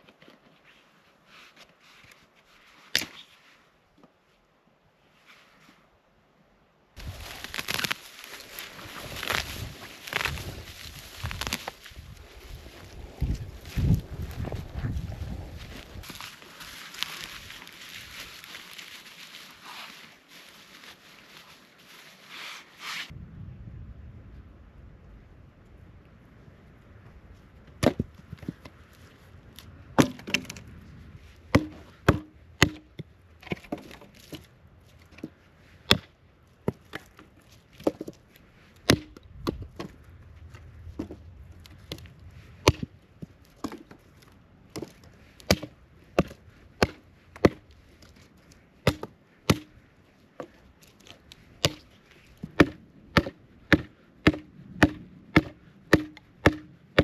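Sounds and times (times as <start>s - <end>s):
chopping wood: 27.8s - 28.6s, 30.0s - 30.6s, 31.5s - 34.4s, 35.9s - 37.2s, 38.8s - 40.0s, 42.6s - 42.9s, 44.7s - 47.7s, 48.8s - 49.8s, 51.6s - 57.0s.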